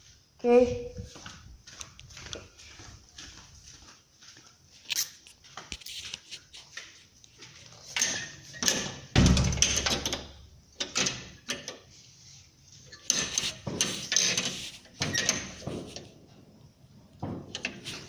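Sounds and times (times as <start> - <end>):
loud deep thump: 9.2 - 9.6.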